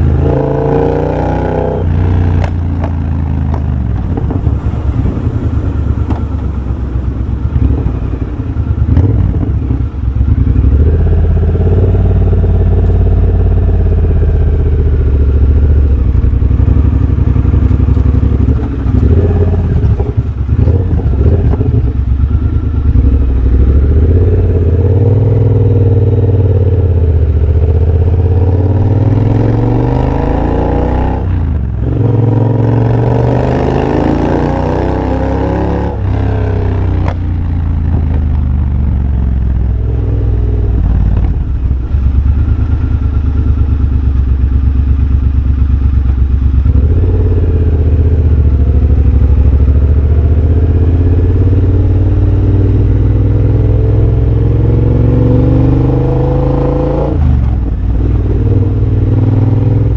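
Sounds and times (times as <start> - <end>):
motorcycle engine accelerating: 0.0 - 59.9.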